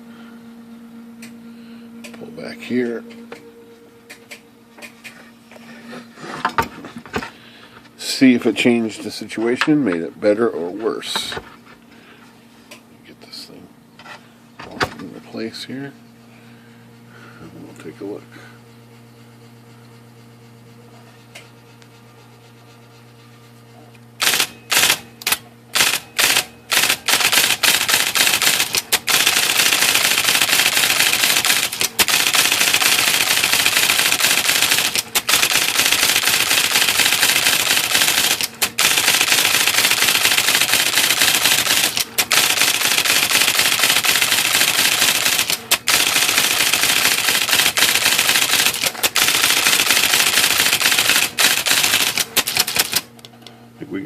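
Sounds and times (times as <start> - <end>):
low hum: 0.0 - 25.7
electric typewriter typing: 24.2 - 53.1.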